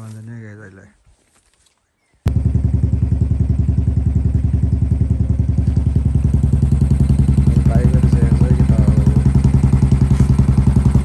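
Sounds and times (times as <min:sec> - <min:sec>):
motorcycle engine running: 0:02.3 - 0:11.0.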